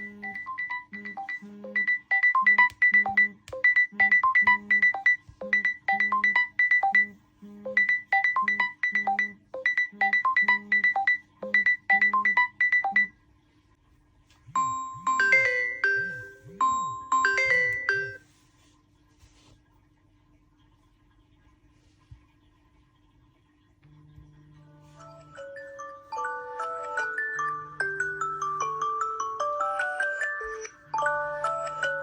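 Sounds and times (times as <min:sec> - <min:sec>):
chiming ringtone: 0:00.0 - 0:07.1, 0:07.7 - 0:13.1, 0:14.6 - 0:18.2, 0:25.0 - 0:32.0
phone ringtone melody: 0:00.0 - 0:13.1, 0:14.6 - 0:18.2, 0:25.0 - 0:32.0.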